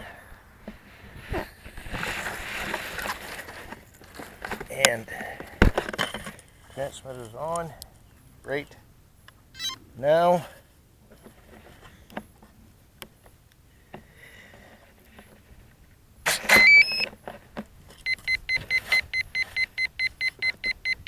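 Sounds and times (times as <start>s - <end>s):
steady high beeps: 9.6s - 9.8s, 16.6s - 17.0s.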